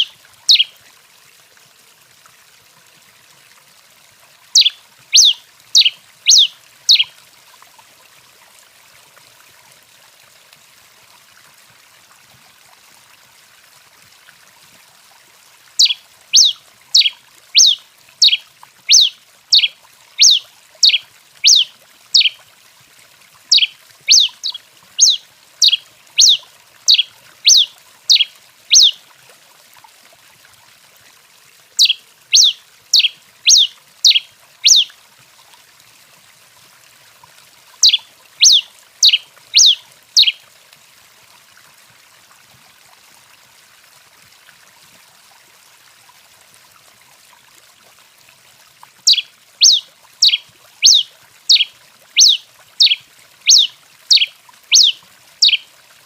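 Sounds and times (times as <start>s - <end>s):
finch calling sharp chips: 0.0s - 0.7s, 4.6s - 7.1s, 15.8s - 22.4s, 23.5s - 29.0s, 31.8s - 34.9s, 37.8s - 40.4s, 49.1s - 55.6s
faint steady hiss: 0.0s - 56.0s.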